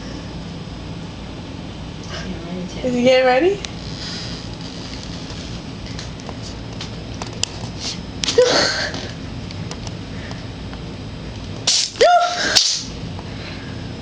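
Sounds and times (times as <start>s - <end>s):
cat sneezing: 11.7s - 13.0s.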